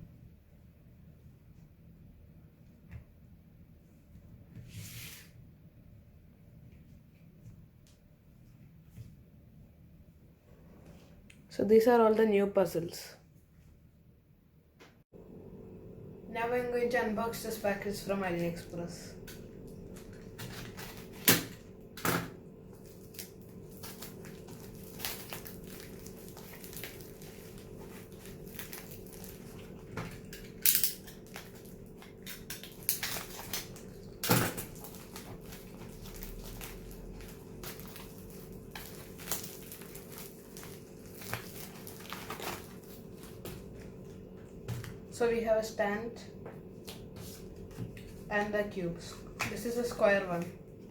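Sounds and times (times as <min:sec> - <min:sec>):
plastic packaging crackling: 0:22.7 - 0:45.1.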